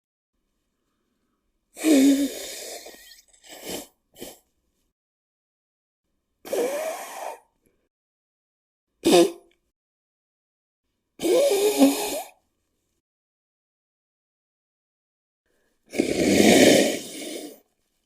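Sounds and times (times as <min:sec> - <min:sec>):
person blowing nose: 0:01.8 - 0:04.5, 0:06.5 - 0:07.4, 0:09.0 - 0:09.4, 0:11.2 - 0:12.4, 0:15.9 - 0:17.6.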